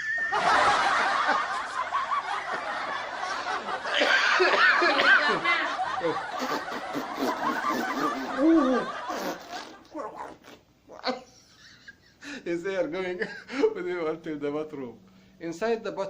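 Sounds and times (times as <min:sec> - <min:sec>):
people laughing: 0:00.0 - 0:10.2, 0:10.9 - 0:12.4.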